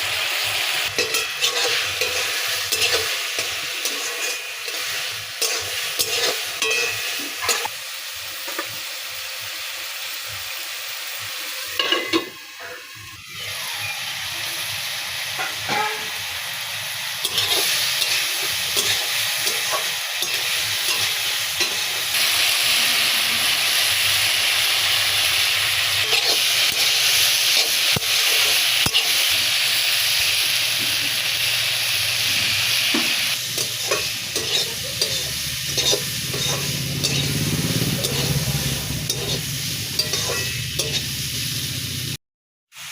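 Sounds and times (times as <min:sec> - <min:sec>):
food sizzling in a pan: 0:00.0 - 0:42.9.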